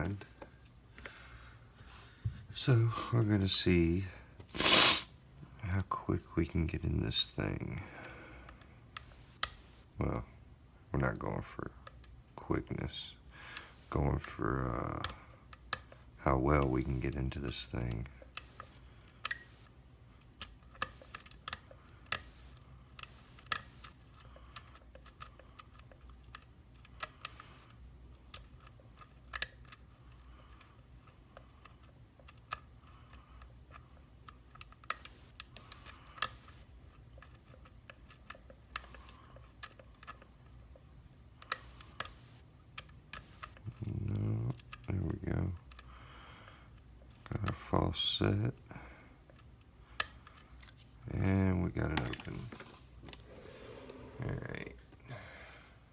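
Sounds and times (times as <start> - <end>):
lock pick clicks: 52.0 - 53.3.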